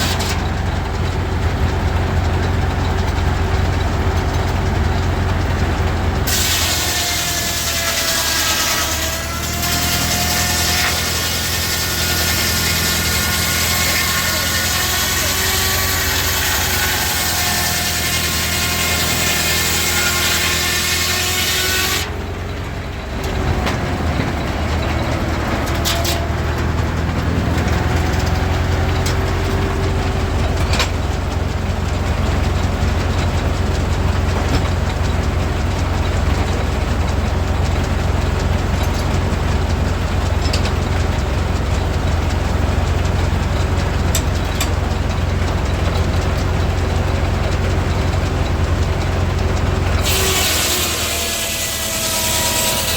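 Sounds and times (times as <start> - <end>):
low engine rumble: 0.0 - 6.8, 22.0 - 50.1
many-toned sawmill whine: 0.0 - 52.9.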